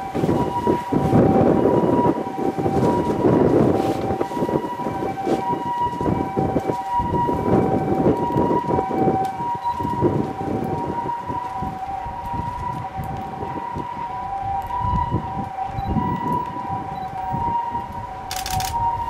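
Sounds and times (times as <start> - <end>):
level crossing alarm two-tone ringing: 14.6 - 17.8.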